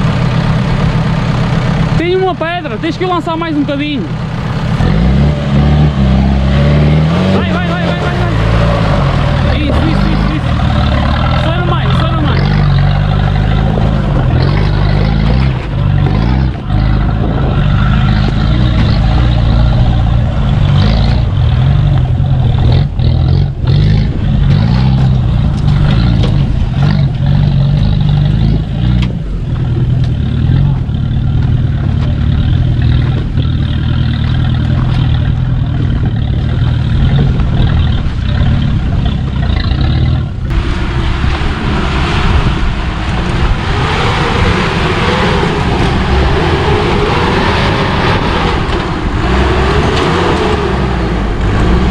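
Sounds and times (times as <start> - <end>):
off-road engine running: 0.0 - 51.9
vehicle knocks and rattles: 9.2 - 40.5.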